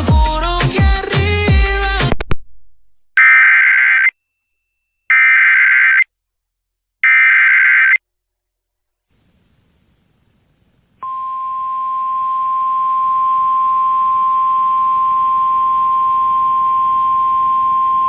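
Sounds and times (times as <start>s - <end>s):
steady emergency alert tone: 5.1s - 6.0s, 7.0s - 8.0s.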